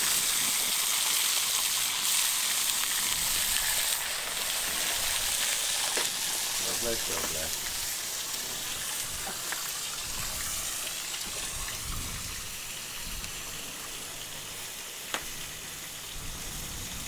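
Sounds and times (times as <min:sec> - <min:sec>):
bacon sizzling: 0:00.0 - 0:17.0.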